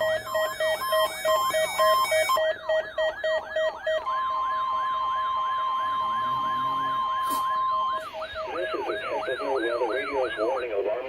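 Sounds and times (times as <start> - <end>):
rapid pulsed beeps: 0.0 - 11.0
steady warning alarm tone: 0.0 - 11.0
whooping alarm sweep: 0.0 - 11.0.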